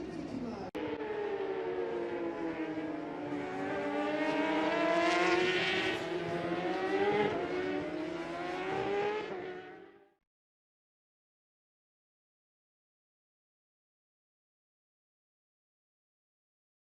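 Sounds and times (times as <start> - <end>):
racing car engines passing: 0.0 - 10.2.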